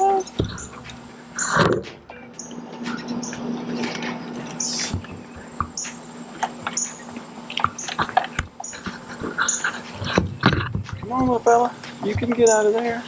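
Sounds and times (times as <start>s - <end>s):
bird squeaking: 0.0s - 1.6s, 4.6s - 12.7s.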